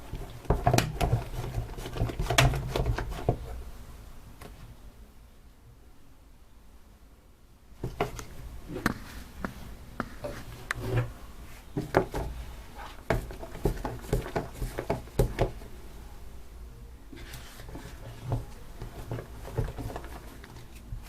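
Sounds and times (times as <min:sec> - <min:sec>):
spoon stirring slime in a bowl: 0:00.0 - 0:03.5, 0:11.7 - 0:15.7, 0:17.1 - 0:21.0.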